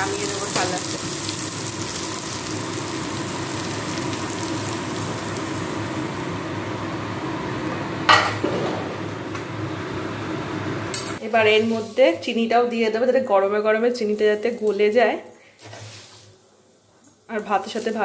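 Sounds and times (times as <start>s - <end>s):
vegetables sizzling in a frying pan: 0.0s - 8.5s, 9.7s - 12.5s, 17.3s - 18.0s.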